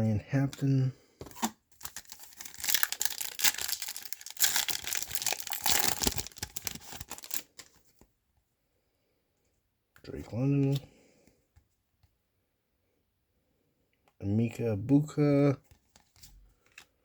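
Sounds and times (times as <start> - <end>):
foil wrapper tearing and crinkling: 1.4 - 7.8.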